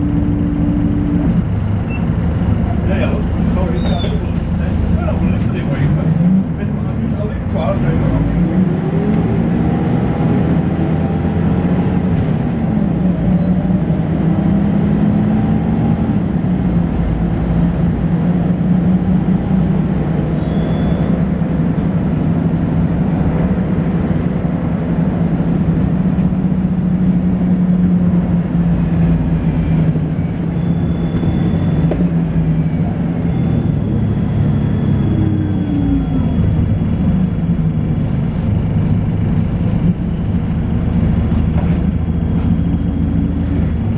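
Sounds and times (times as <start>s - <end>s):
bus diesel engine: 0.0s - 43.9s.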